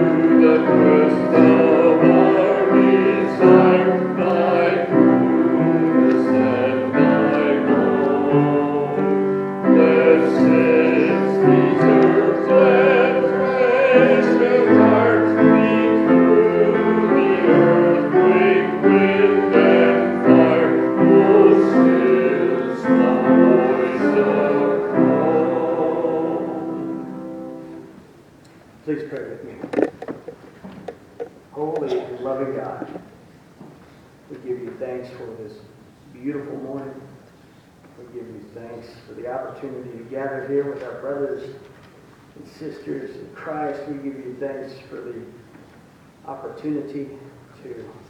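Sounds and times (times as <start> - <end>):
piano accompaniment: 0.0 - 28.3
voices singing church music: 0.0 - 30.0, 38.0 - 45.5.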